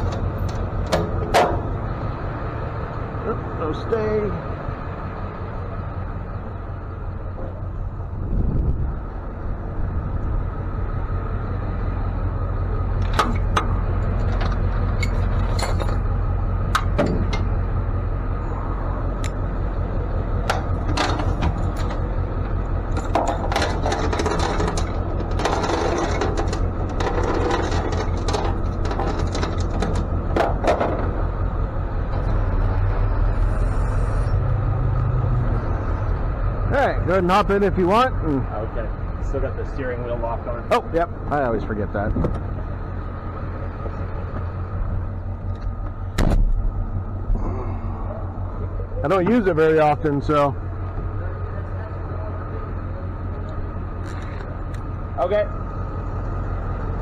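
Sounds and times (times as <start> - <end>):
metal clanks and rattles: 0.0 - 2.0, 12.9 - 18.0, 20.2 - 32.9
truck engine idling: 0.0 - 57.0.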